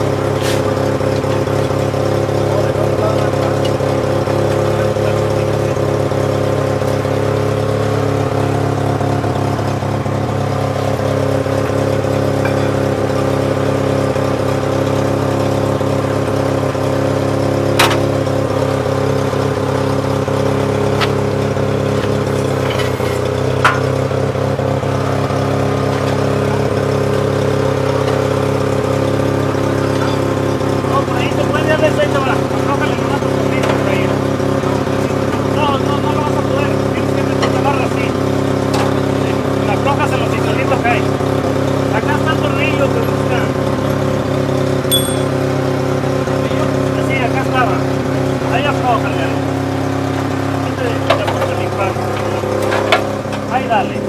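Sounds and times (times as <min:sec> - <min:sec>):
engine idling: 0:00.0 - 0:54.0
sharp knocks: 0:17.8 - 0:18.0, 0:23.6 - 0:24.0.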